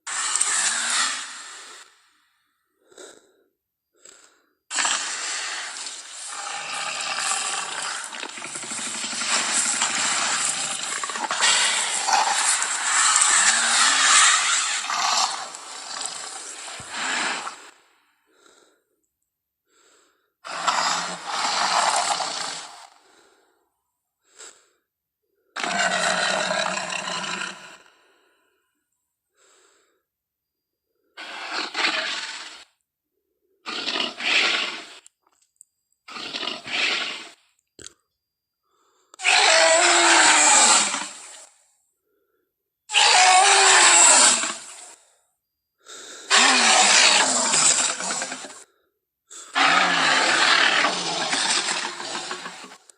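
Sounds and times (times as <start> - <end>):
breathy dinosaur growl: 0.1 - 18.9, 19.7 - 23.6, 25.5 - 28.8, 45.8 - 52.9.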